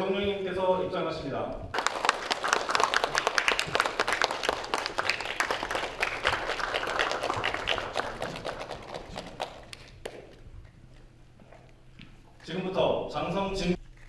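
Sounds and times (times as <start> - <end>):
audience applauding: 1.8 - 10.4.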